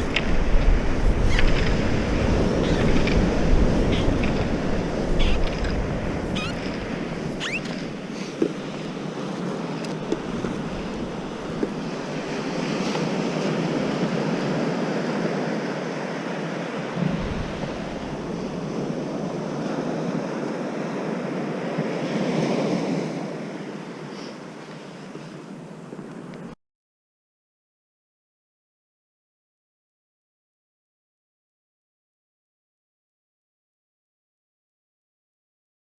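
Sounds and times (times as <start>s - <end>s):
wind noise on microphone: 0.0s - 15.7s, 16.8s - 23.4s
ocean surf on beach: 0.0s - 26.6s.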